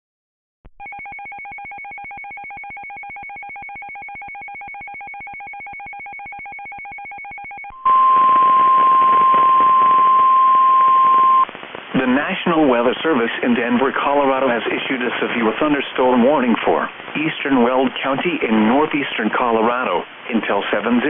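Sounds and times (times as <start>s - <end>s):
steady warning alarm tone: 0.8s - 11.5s
radio hiss: 11.0s - 21.0s.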